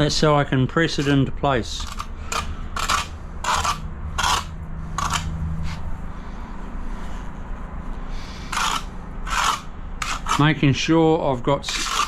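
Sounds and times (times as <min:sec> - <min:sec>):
trowel scraping tile adhesive: 0:00.9 - 0:05.8, 0:08.4 - 0:10.6, 0:11.6 - 0:12.0.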